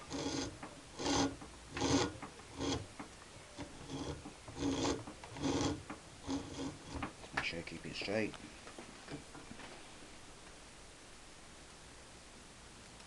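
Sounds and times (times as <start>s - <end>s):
wire stripping machine grinding: 0.0s - 7.2s.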